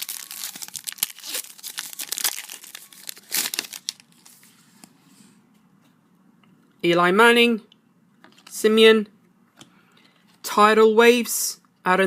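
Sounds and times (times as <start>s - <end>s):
plastic packaging crinkling: 0.0s - 4.4s.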